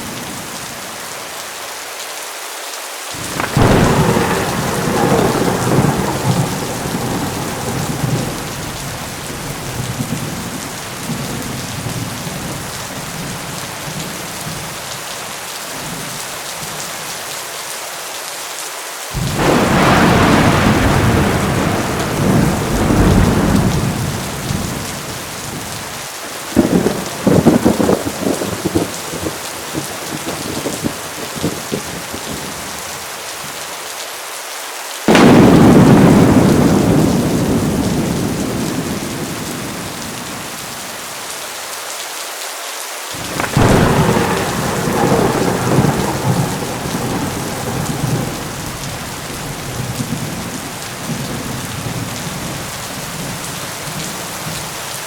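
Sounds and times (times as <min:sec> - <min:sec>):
heavy rain pouring: 0:00.0 - 0:55.0
thunder cracking: 0:03.2 - 0:12.2, 0:19.2 - 0:25.9, 0:26.5 - 0:32.0, 0:35.1 - 0:40.5, 0:43.2 - 0:54.6
thunder rumbling: 0:03.2 - 0:14.7, 0:19.2 - 0:32.8, 0:35.1 - 0:40.8, 0:43.2 - 0:54.8.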